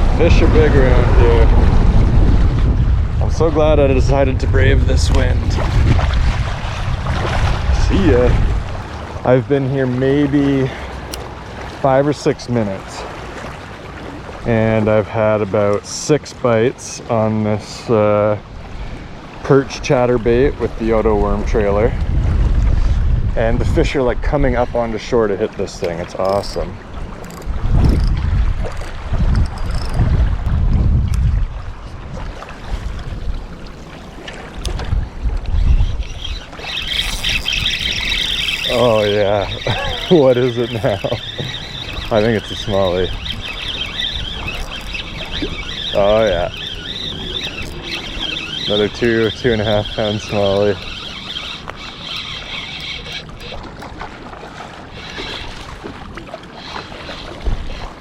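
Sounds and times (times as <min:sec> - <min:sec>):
wind buffeting microphone: 0:00.0 - 0:15.4, 0:18.4 - 0:58.0
small clicks: 0:27.2 - 0:28.1, 0:28.7 - 0:30.0.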